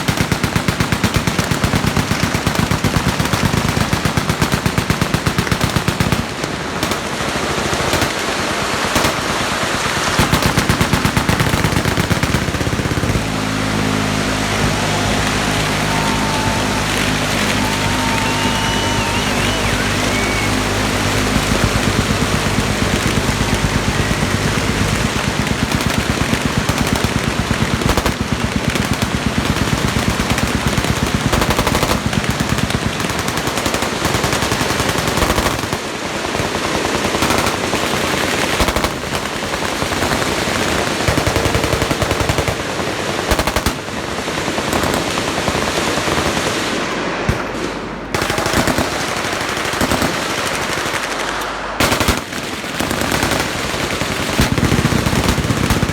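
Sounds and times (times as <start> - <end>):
machine guns firing: 0.0 - 55.9.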